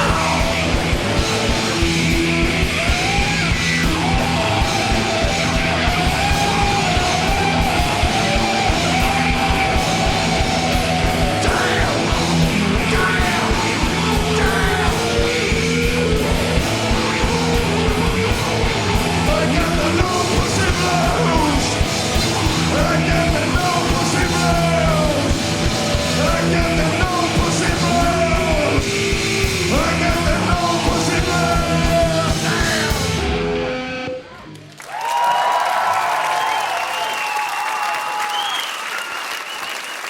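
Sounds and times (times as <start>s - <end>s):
pounding drums: 0.0s - 33.3s
live rock band playing: 0.0s - 34.3s
distorted guitar: 0.0s - 34.6s
audience applause: 2.7s - 13.5s, 16.0s - 22.7s, 34.3s - 40.0s.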